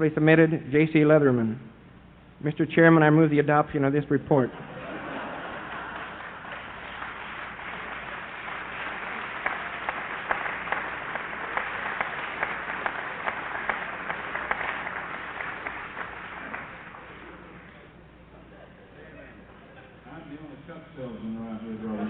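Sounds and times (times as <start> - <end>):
audience applauding: 4.9 - 17.8.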